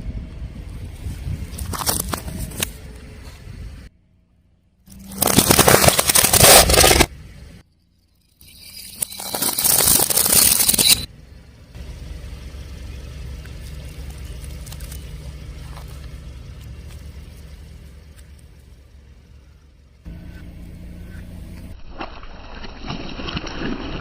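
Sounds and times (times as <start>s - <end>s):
car low rumble: 0.0s - 21.8s
tyre crushing objects: 4.9s - 7.1s, 9.1s - 11.1s.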